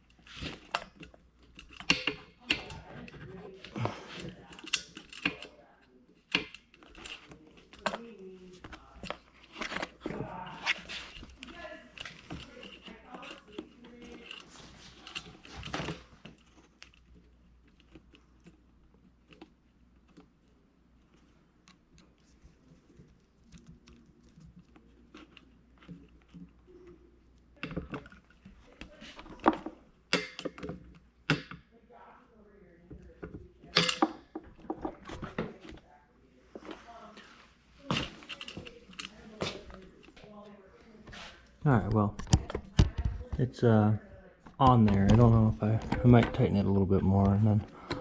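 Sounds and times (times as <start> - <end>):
clicks and knocks of tools: 0.0 - 5.6, 33.2 - 35.8, 37.9 - 40.3.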